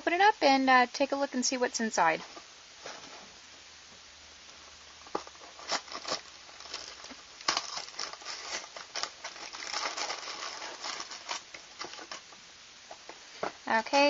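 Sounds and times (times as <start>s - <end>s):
plastic bags crinkling: 5.0s - 12.4s
cardboard box snapping and tearing: 5.2s - 12.2s.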